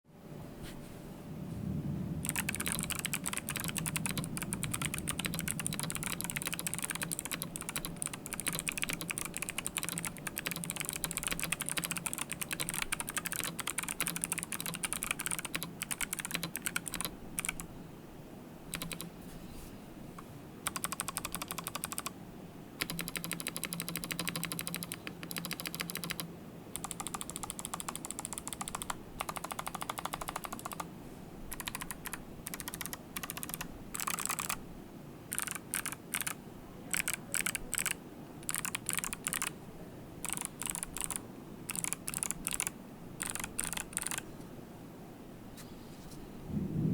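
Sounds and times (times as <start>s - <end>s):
mechanical keyboard key clicks: 2.2s - 17.6s, 18.7s - 19.1s, 20.7s - 22.1s, 22.8s - 30.8s, 31.5s - 34.6s, 35.3s - 39.5s, 40.2s - 44.2s.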